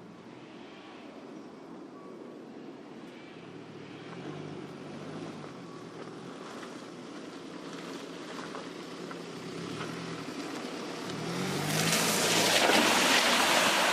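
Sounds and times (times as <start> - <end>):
wind and tyre rushing noise: 0.0 - 13.9
car engine hum: 3.0 - 13.9.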